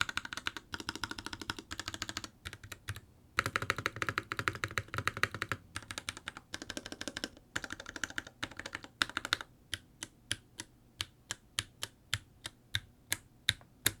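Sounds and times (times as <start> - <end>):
mechanical keyboard typing: 0.0 - 9.5.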